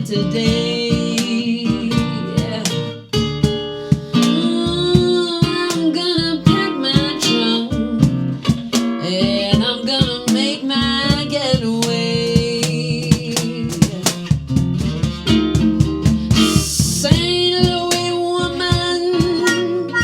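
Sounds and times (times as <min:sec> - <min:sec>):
acoustic guitar strumming: 0:00.0 - 0:20.0
person singing: 0:16.3 - 0:20.0.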